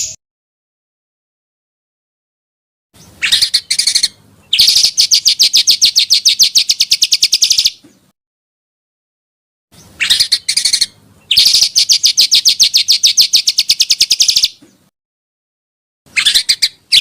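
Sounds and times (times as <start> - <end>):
songbird singing trill: 3.0 - 8.1, 9.8 - 14.9, 16.1 - 17.0.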